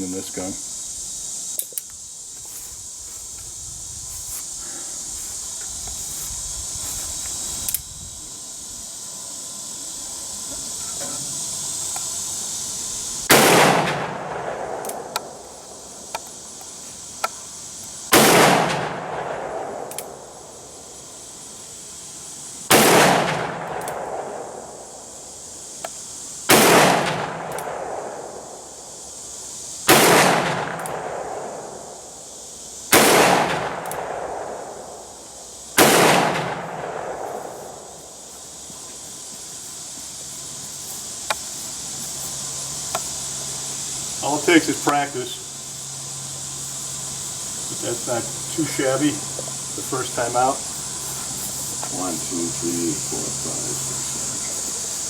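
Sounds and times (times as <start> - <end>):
steady hiss: 0.0 - 55.0
revolver gunshots: 13.3 - 15.1, 18.1 - 20.2, 22.7 - 24.6, 26.5 - 28.2, 29.9 - 31.7, 32.9 - 34.7, 35.8 - 37.3.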